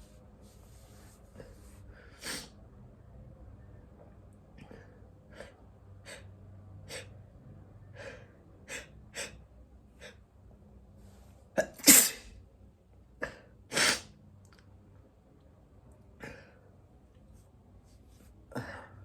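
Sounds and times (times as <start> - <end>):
person sneezing: 11.6 - 12.3, 13.2 - 14.1.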